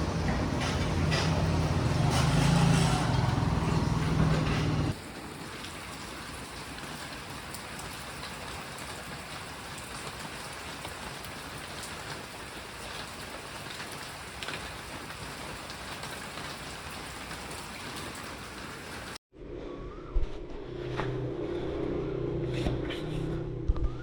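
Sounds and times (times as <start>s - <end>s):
steady rain hiss: 0.0s - 19.2s.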